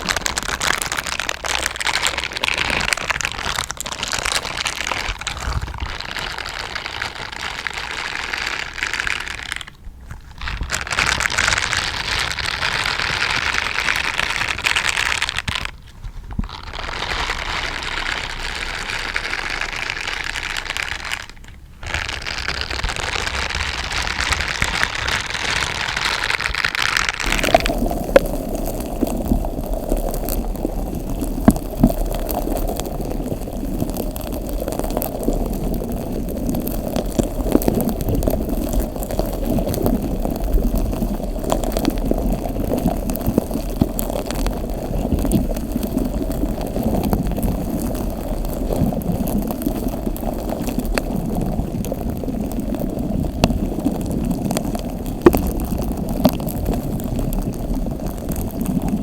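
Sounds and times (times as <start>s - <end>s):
wet slime squelching: 0.0s - 59.0s
small pops and clicks: 26.0s - 59.0s.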